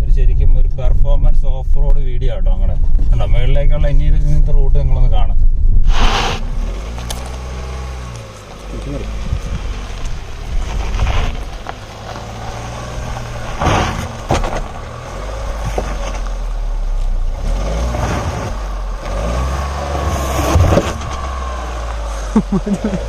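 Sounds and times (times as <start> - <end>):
car engine pulling under load: 5.9 - 23.0
car knocking over rocks: 8.0 - 17.3, 20.0 - 22.0.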